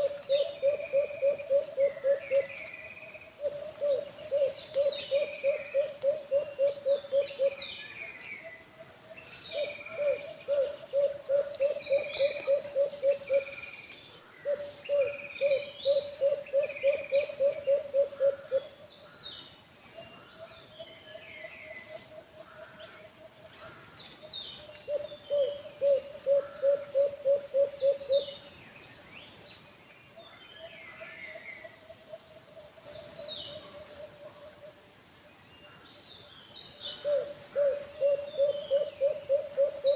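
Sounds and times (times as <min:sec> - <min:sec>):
dove cooing: 0:00.0 - 0:07.7, 0:09.5 - 0:13.6, 0:14.4 - 0:18.7, 0:24.9 - 0:28.5, 0:37.0 - 0:39.9.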